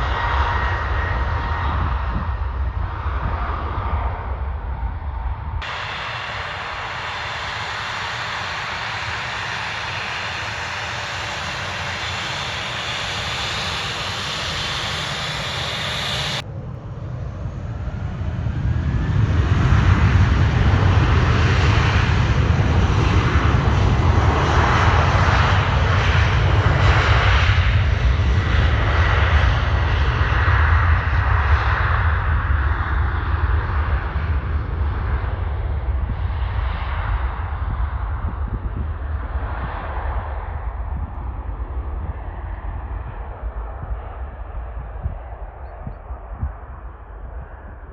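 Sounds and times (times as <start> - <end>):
airliner engines rumbling: 0.0 - 47.9
steady engine hiss: 5.6 - 16.4.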